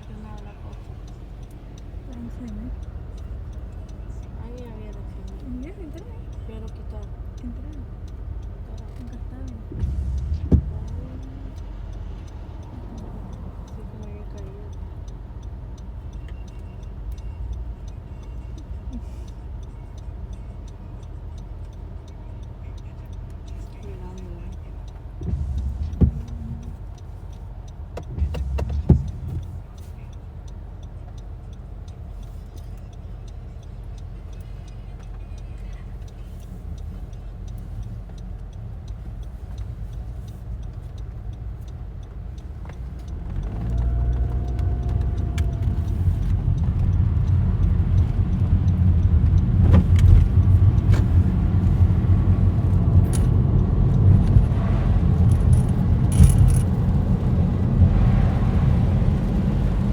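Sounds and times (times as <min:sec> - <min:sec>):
car cabin road noise: 0:00.0 - 0:59.9
sharp clicks: 0:19.5 - 0:58.4
engine speeding up: 0:43.0 - 0:59.9.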